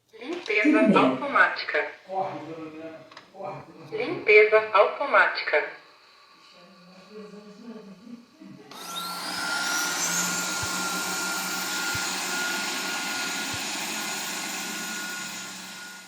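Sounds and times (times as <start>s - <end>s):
robot vacuum fan whine: 5.1s - 16.0s.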